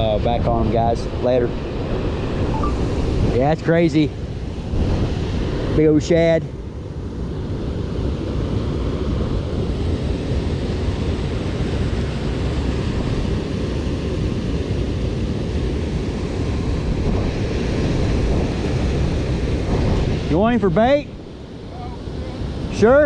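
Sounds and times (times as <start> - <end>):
water roaring from dam spillway: 0.0 - 23.0
wind buffeting microphone: 6.6 - 23.0.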